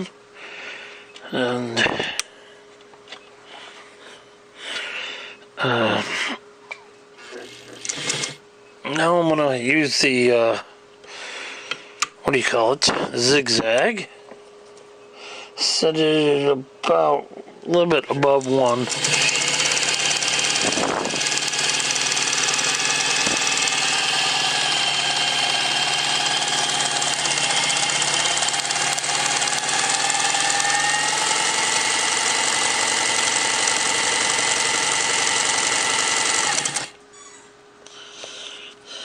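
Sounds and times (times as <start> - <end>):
sewing machine running: 7.4 - 8.4, 18.4 - 37.0.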